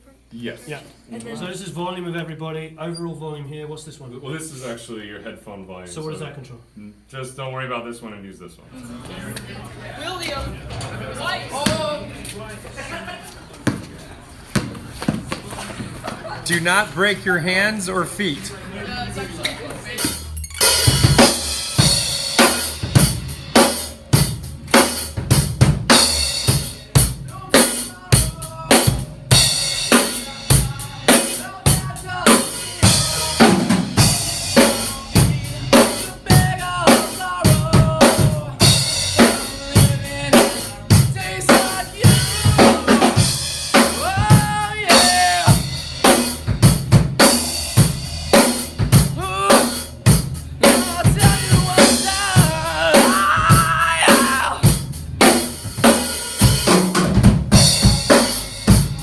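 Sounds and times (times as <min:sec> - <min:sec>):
bass drum and snare beat: 0:20.0 - 0:59.0
rock band playing: 0:20.0 - 0:59.0.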